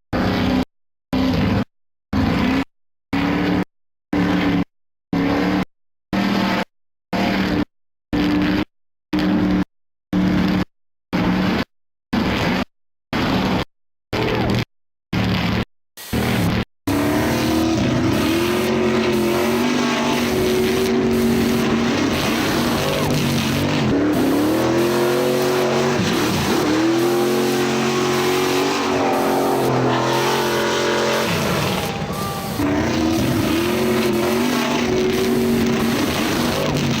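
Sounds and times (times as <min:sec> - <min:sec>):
car engine revving: 0:16.2 - 0:37.0.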